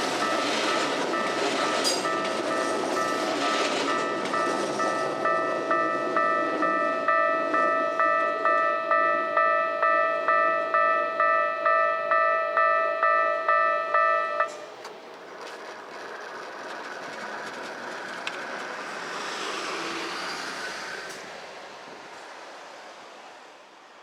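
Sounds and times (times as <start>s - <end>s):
hissing rush of passing train: 0.0s - 11.4s, 13.9s - 24.0s
level crossing bell clanging: 0.0s - 14.6s.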